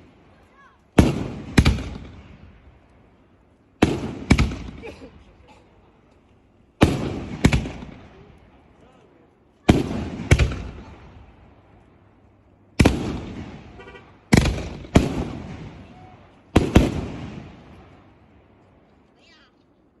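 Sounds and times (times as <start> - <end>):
firework bangs with echo: 0.9 - 2.7, 3.8 - 5.1, 6.8 - 8.8, 9.6 - 11.7, 12.8 - 18.1.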